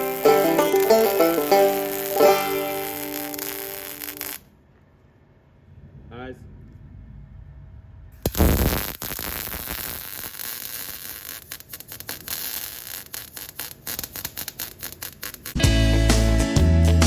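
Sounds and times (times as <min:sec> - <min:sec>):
welding arc crackling: 0:00.0 - 0:04.4, 0:08.2 - 0:15.6.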